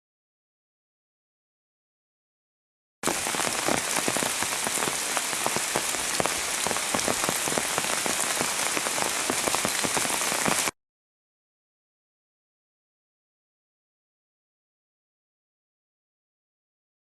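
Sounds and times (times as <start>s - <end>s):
heavy pouring rain: 3.0s - 10.7s.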